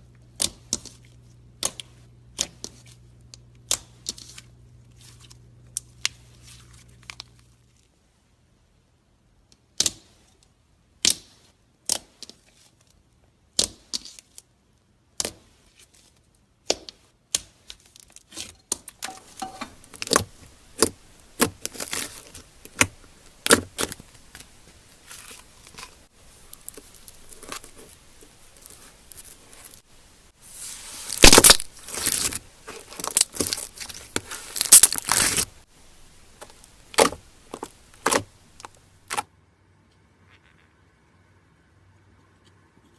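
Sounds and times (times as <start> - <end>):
sticky slime popping: 19.1 - 39.2.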